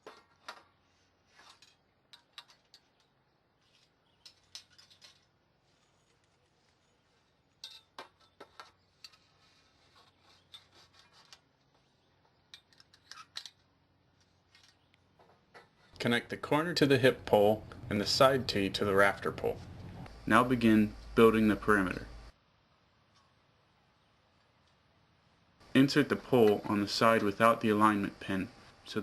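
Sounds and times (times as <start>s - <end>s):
metal tent poles clicking: 1.4s - 5.4s.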